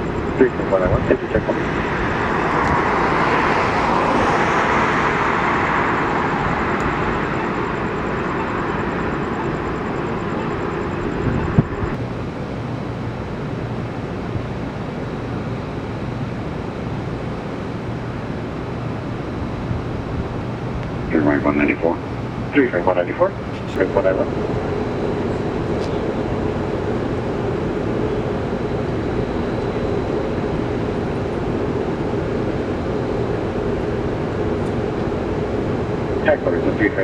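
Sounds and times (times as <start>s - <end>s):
low steady hum: 0.0s - 37.0s
vehicle passing: 1.4s - 9.4s.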